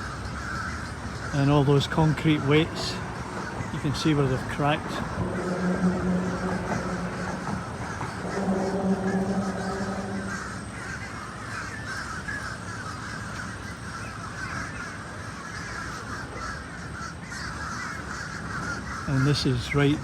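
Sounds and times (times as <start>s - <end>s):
birds chattering harshly: 0.0s - 11.0s
low droning tone: 2.7s - 11.0s.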